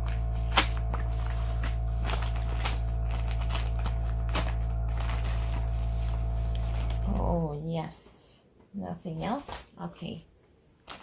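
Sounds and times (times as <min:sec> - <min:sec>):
packaging clicks and rustles: 0:00.0 - 0:07.2, 0:10.8 - 0:11.0
low machinery drone: 0:00.0 - 0:07.7.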